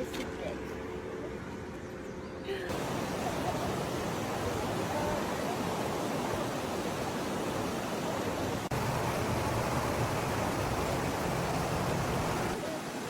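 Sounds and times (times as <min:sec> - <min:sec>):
waterfall roaring: 0:02.7 - 0:13.0.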